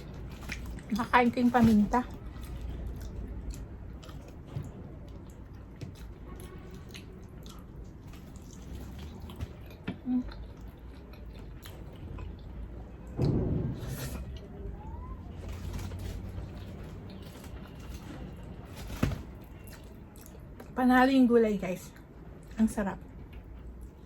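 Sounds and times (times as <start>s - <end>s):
person chewing food: 0.0s - 1.1s, 2.1s - 12.7s.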